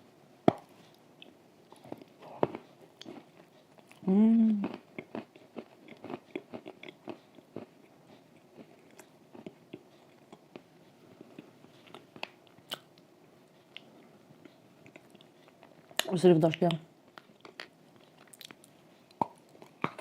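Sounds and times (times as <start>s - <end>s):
cookies crunching while eating: 1.2s - 13.0s, 14.8s - 20.0s.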